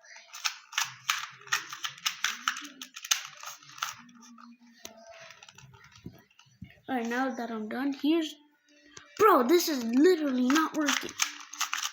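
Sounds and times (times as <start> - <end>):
puzzle cube clicking: 0.3 - 4.0, 9.7 - 11.9.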